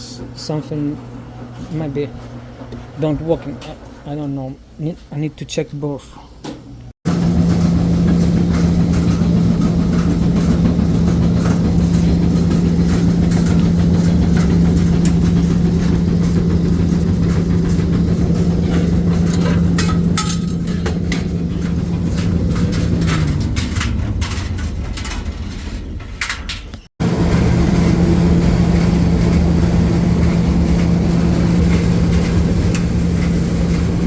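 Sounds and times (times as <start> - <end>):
laundry machine motor humming: 7.1 - 26.2, 27.0 - 34.0.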